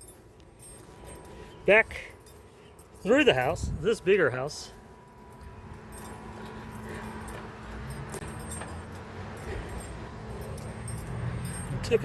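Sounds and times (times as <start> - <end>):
metallic clinking and rattling: 0.0 - 3.6, 5.0 - 12.0
handling noise: 4.8 - 12.0.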